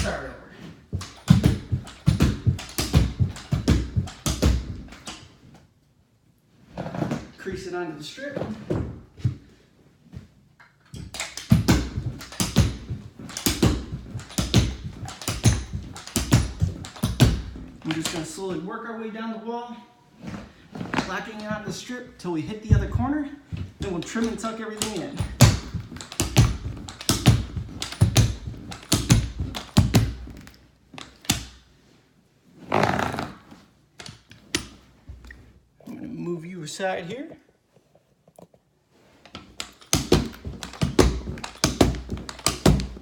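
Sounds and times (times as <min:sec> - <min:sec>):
carpet thumps and knocks: 0:00.8 - 0:05.1, 0:11.0 - 0:18.3, 0:20.2 - 0:30.5, 0:39.4 - 0:43.0.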